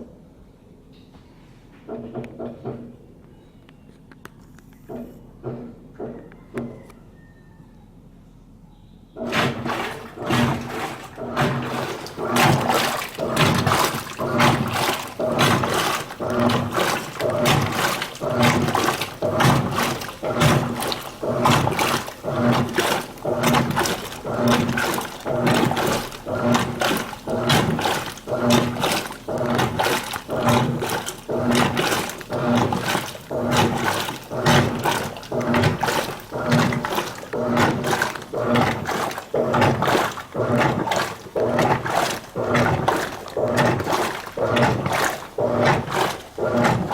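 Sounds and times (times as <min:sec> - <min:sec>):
washing machine motor humming: 0:09.2 - 0:46.9
water sloshing in tub: 0:09.2 - 0:46.9.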